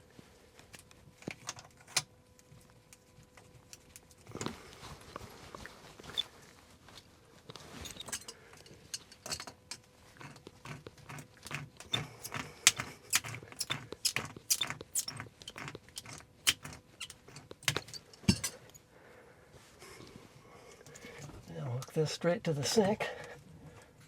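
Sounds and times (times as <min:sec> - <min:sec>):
tools and plumbing parts clicking: 0:07.8 - 0:18.8.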